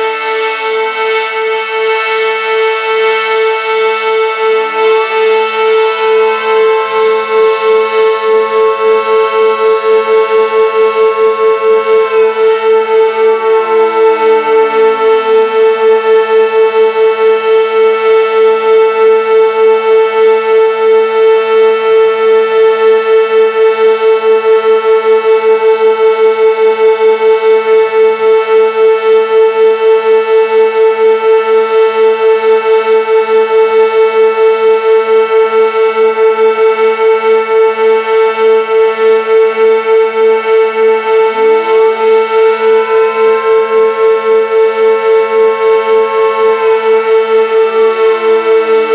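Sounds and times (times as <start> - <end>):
pulsing warning siren: 0.0 - 48.9
faint winding siren: 2.6 - 23.2, 35.7 - 48.9.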